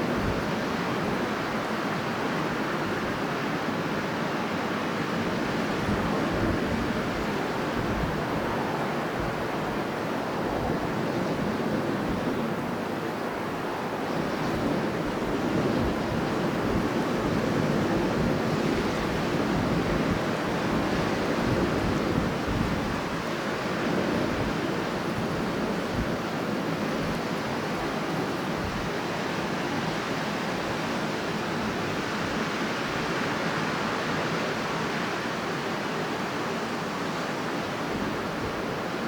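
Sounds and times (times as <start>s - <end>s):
strong wind blowing: 0.0s - 39.0s.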